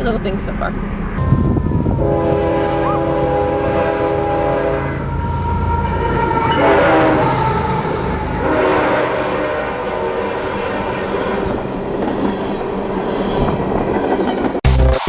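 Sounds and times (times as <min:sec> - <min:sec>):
low rumble of train: 0:00.0 - 0:14.6
train horn blasts: 0:01.2 - 0:11.3.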